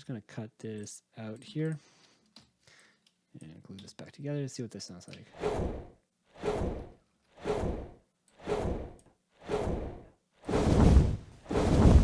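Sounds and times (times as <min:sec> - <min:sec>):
whooshing wing flaps: 0:05.4 - 0:12.0.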